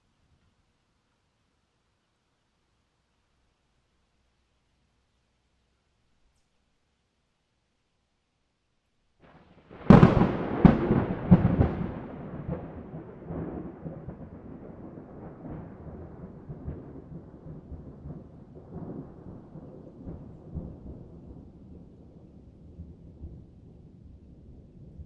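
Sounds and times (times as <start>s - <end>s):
rolling thunder rumble: 9.6s - 25.0s
thunder cracks: 9.7s - 21.6s.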